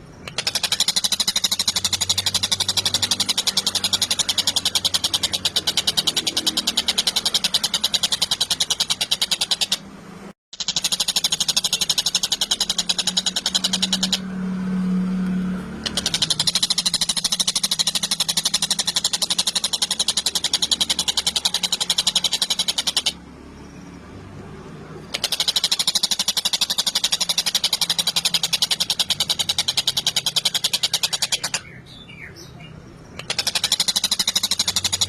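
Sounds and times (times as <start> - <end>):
kingfisher rattling chatter: 0.3 - 9.8, 15.8 - 23.2, 24.9 - 31.8, 32.5 - 35.0.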